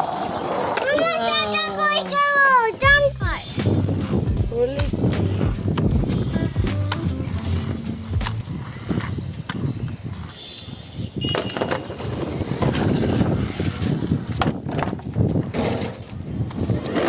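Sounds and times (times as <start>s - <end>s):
toy car wheels rolling and scraping: 0.0s - 3.0s, 3.6s - 17.0s.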